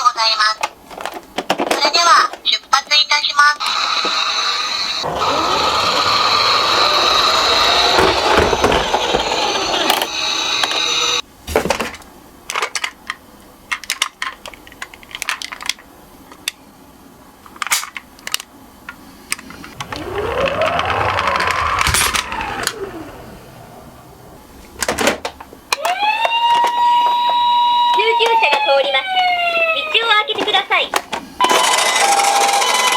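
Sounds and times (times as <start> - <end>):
rising and falling tone: 5.0 - 11.2, 19.8 - 24.6
small cars clicking on track: 5.0 - 11.2, 19.7 - 23.7
toy cars rolling rattle: 5.1 - 11.2, 19.8 - 23.2, 31.4 - 32.9.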